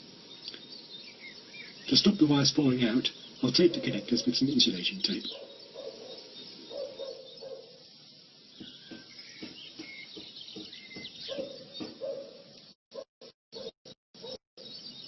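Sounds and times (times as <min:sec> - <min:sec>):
birds chirping and calling: 0:00.0 - 0:13.0, 0:13.6 - 0:15.0.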